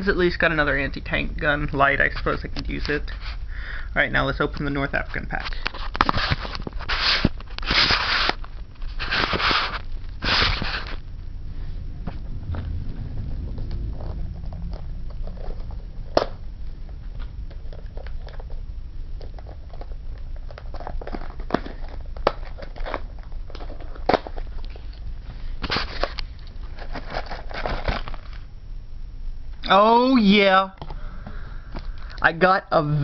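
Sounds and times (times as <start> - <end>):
steady low hum: 0.0 - 33.0
packaging crinkling: 5.0 - 11.2, 13.5 - 28.4.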